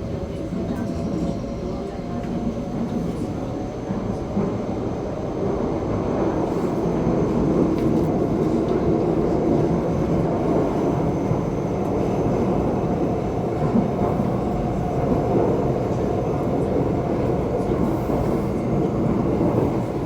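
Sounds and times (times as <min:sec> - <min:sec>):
train rumbling at speed: 0:00.0 - 0:20.0.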